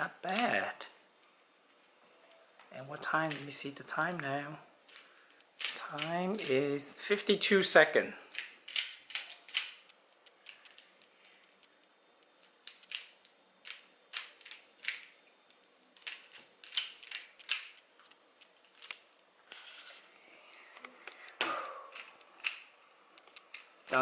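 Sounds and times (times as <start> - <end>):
puzzle cube layers clicking: 3.0 - 4.3, 4.9 - 6.7, 8.3 - 19.1, 21.1 - 24.0.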